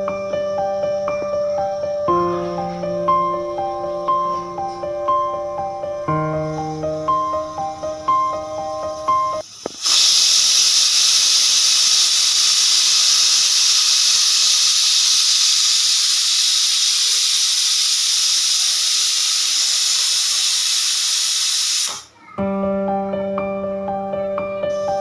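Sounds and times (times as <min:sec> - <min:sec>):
pressure cooker whistle hissing: 0:06.1 - 0:22.2, 0:24.7 - 0:25.0.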